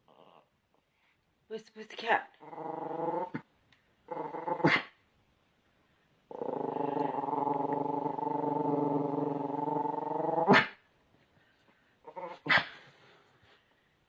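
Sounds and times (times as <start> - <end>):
dog growling: 2.4 - 3.5, 4.1 - 4.9, 6.3 - 10.8, 12.0 - 12.8.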